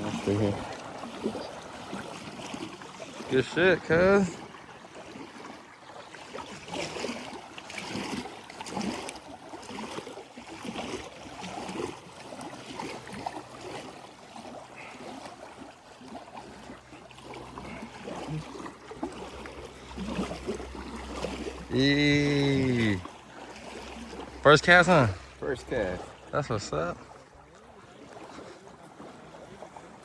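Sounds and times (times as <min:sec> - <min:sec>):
water lapping against boat hull: 0:00.0 - 0:30.0
low steady hum: 0:16.8 - 0:27.6.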